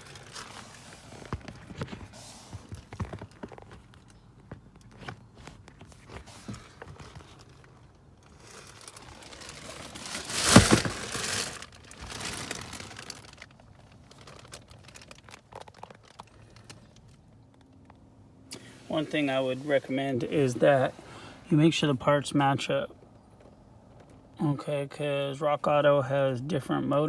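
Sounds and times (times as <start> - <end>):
crinkling rustle: 0.0 - 21.2.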